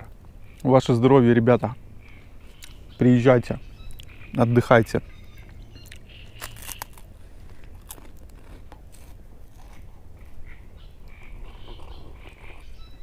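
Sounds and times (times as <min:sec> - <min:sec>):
crunching of wafer cookie being chewed: 0:05.8 - 0:10.4, 0:11.1 - 0:12.7.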